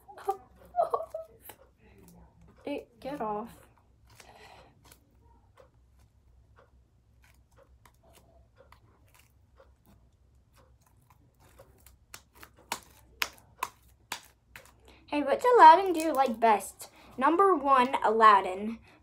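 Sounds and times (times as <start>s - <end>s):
sticky slime clicks and smacks: 11.0s - 14.8s.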